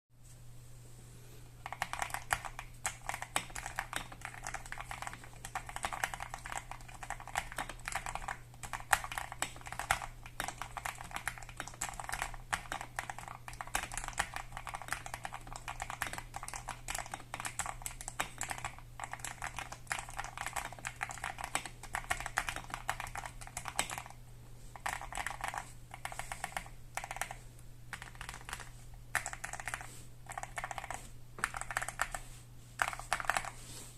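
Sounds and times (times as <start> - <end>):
faint steady low hum: 0.2 - 33.9
fast typing on mechanical keyboard: 1.6 - 24.2, 24.8 - 32.2, 32.8 - 33.6.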